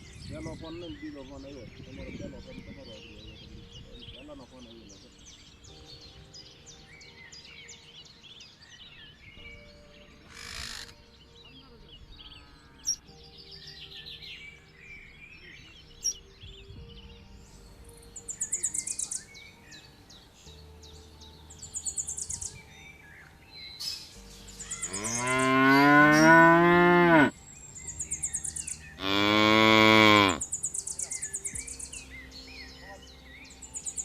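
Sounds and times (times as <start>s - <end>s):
pulsed chirping trills: 4.0s - 34.0s
cattle mooing: 24.9s - 27.3s, 29.0s - 30.4s.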